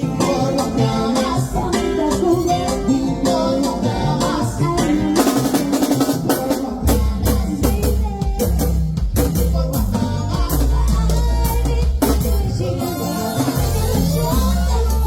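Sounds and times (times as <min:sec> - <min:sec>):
drums beating: 0:00.0 - 0:15.0
live band music: 0:00.0 - 0:15.0
deep bass line: 0:06.7 - 0:15.0.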